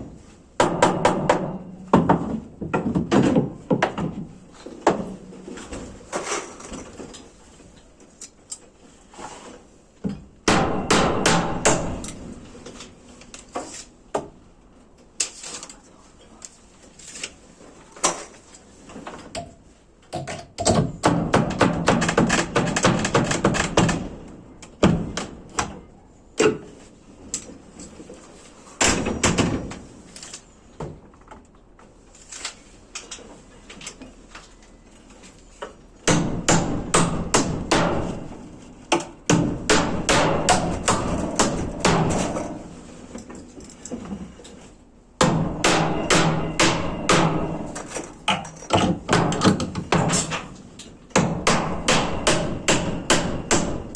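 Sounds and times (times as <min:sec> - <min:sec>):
hammering on wood: 0:00.6 - 0:05.1, 0:10.4 - 0:12.0, 0:20.1 - 0:24.1, 0:36.0 - 0:42.6, 0:45.2 - 0:47.8, 0:48.8 - 0:50.4, 0:51.1 - 0:53.9.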